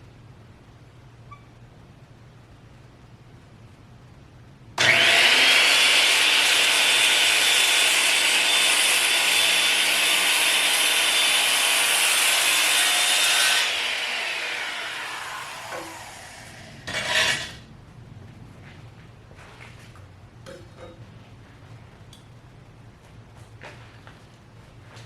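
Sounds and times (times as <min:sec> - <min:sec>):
circular saw cutting wood: 0:04.8 - 0:17.6.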